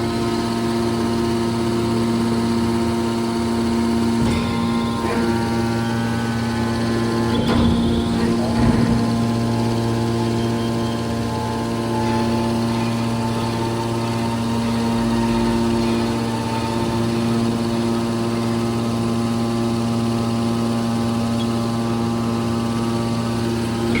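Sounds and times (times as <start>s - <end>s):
power unit humming: 0.0s - 24.0s.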